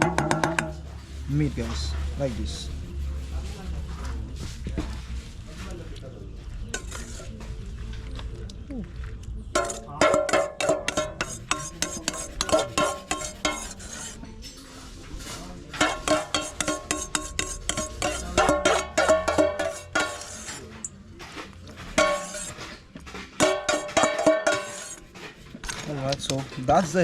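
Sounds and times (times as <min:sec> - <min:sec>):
metal utensil scraping metal pot: 0:00.0 - 0:03.2, 0:06.6 - 0:07.5, 0:09.5 - 0:27.0.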